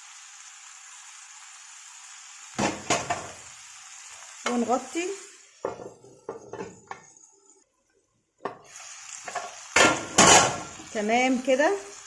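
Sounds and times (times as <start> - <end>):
skewers sizzling on grill pan: 0.0 - 7.8, 8.4 - 12.0
metal lid clanking on pan: 9.3 - 10.6.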